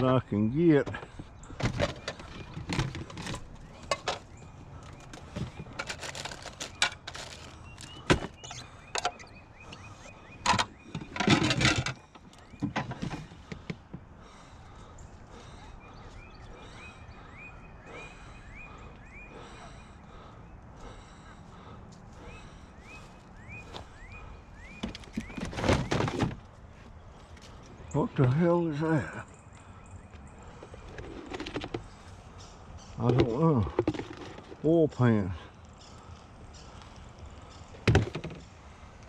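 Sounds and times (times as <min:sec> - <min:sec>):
plastic totes knocking and clattering: 0:00.8 - 0:04.3, 0:05.0 - 0:08.4, 0:10.4 - 0:14.0, 0:24.8 - 0:26.4, 0:33.0 - 0:34.6, 0:37.8 - 0:38.5.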